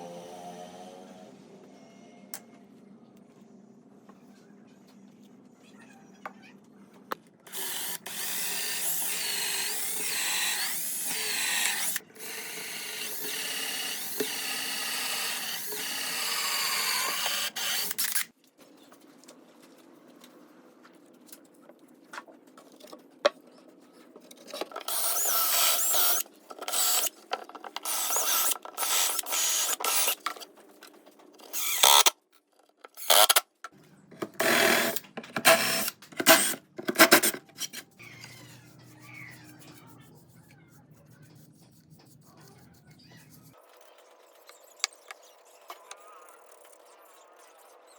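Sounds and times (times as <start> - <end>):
power tool running: 7.5 - 18.3, 24.8 - 27.1, 27.8 - 30.3, 34.3 - 37.3.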